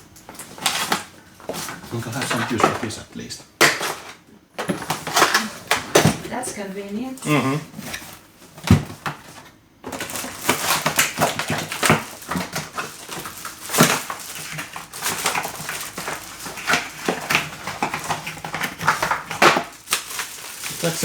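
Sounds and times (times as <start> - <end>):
packaging rustling and crinkling: 0.0 - 6.6, 7.8 - 21.0.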